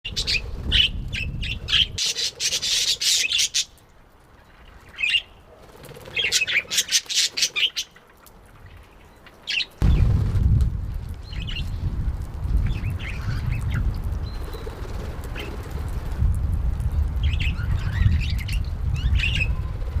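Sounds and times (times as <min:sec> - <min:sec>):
low rumble: 0:09.8 - 0:13.4.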